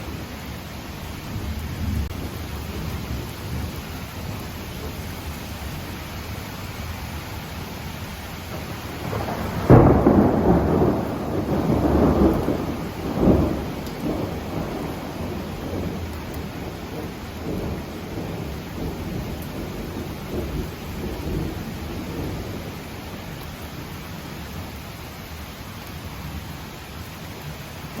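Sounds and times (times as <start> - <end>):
heavy rain downpour: 0.0 - 28.0
thunder cracking and rumbling: 8.4 - 23.5.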